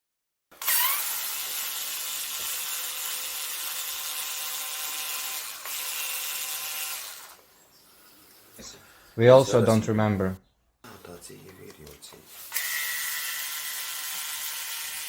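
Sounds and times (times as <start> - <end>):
cordless electric screwdriver running: 0.5 - 7.4, 12.3 - 15.0.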